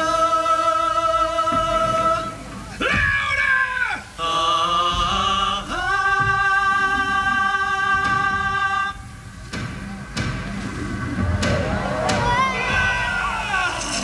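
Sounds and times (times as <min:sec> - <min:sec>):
music: 0:00.0 - 0:14.0
person singing long notes: 0:04.0 - 0:09.1.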